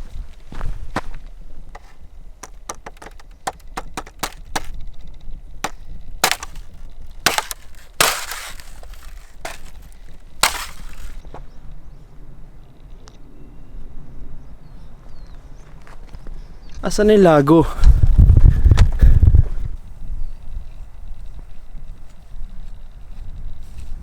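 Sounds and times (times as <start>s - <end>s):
wind rumble on microphone: 0.0s - 2.2s, 17.6s - 24.0s
footstep crunches: 0.0s - 4.8s, 5.6s - 11.4s
footsteps cracking twigs: 0.0s - 4.8s, 5.6s - 11.4s.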